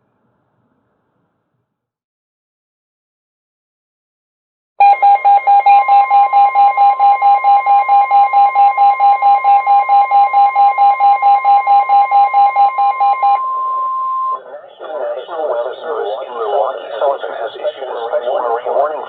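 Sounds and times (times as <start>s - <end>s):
fast beeping alarm: 4.8s - 19.0s
steady warning alarm tone: 4.8s - 19.0s.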